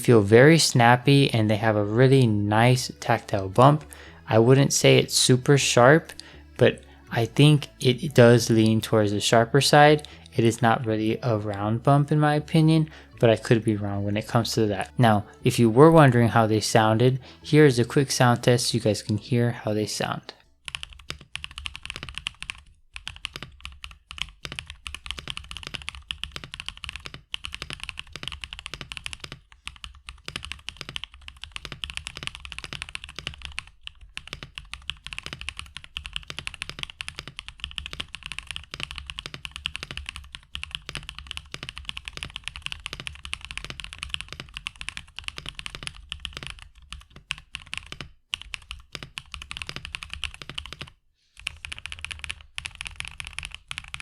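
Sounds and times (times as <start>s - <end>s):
mechanical keyboard typing: 20.6s - 54.0s.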